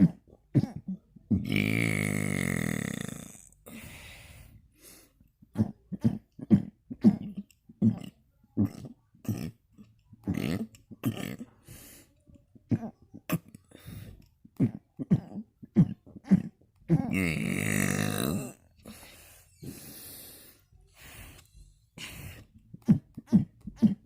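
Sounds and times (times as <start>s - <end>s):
person burping: 0.0s - 3.6s, 5.5s - 11.6s, 14.6s - 19.0s.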